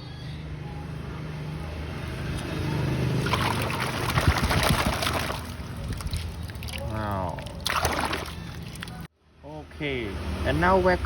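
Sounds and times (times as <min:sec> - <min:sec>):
water splashing and trickling: 0:02.1 - 0:09.2.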